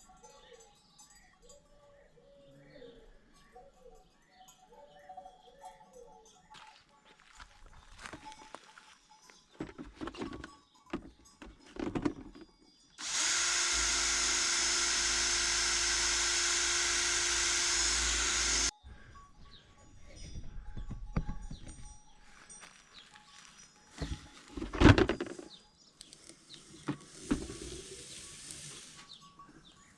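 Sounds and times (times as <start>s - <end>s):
handling knocks and clatters: 6.6s - 12.8s, 19.5s - 25.6s
power tool motor running: 13.0s - 18.7s.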